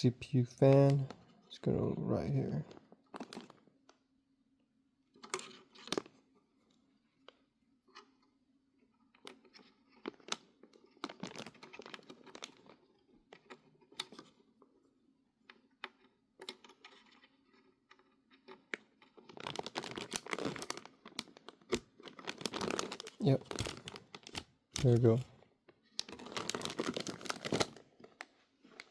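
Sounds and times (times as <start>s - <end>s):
plastic crinkling: 2.4s - 3.7s, 9.3s - 14.3s, 18.4s - 28.9s.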